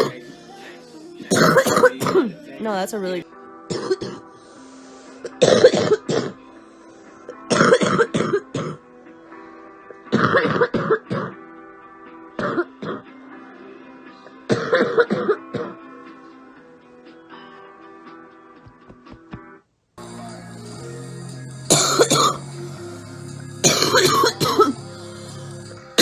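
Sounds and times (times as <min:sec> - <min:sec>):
quiet music: 0:00.0 - 0:26.0
woman coughing: 0:01.3 - 0:02.5, 0:03.7 - 0:04.3, 0:05.2 - 0:06.4, 0:07.5 - 0:08.8, 0:10.1 - 0:11.4, 0:12.4 - 0:13.1, 0:14.5 - 0:15.8, 0:21.7 - 0:22.4, 0:23.6 - 0:24.8.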